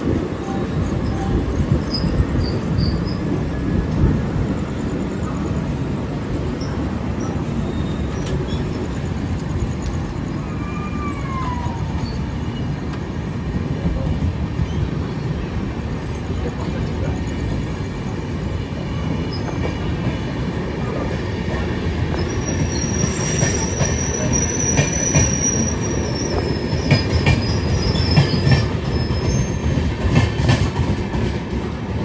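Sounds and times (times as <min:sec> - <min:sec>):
train wheels rumbling on rails: 0:00.0 - 0:32.0
high wheel squeal: 0:01.0 - 0:03.4, 0:06.6 - 0:12.8, 0:22.1 - 0:29.9
clacks over rail joints: 0:20.9 - 0:32.0.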